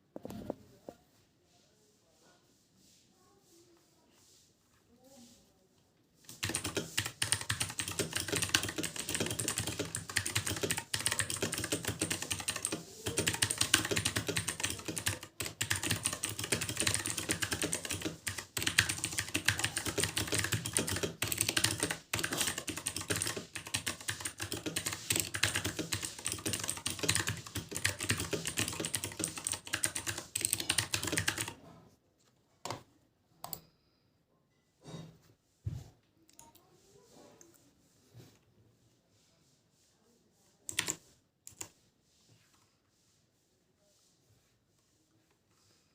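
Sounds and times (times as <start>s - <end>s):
fast mechanical keyboard typing: 6.3s - 31.6s, 40.7s - 41.7s.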